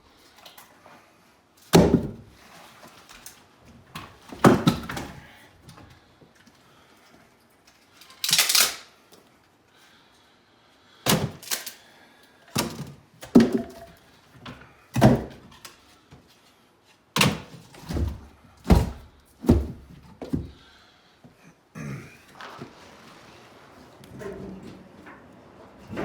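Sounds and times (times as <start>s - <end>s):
logs thunking on woodpile: 1.7s - 2.4s, 4.2s - 5.3s, 14.5s - 15.6s, 17.2s - 20.7s
wood scraping: 22.2s - 26.0s.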